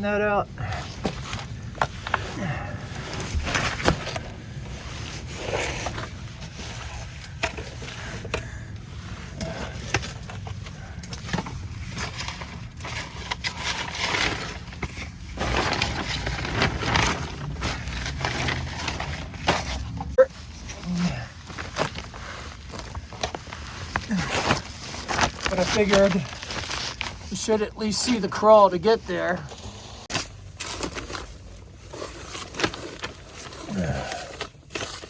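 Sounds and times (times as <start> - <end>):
plastic sheeting rustling and crinkling: 11.6 - 35.0.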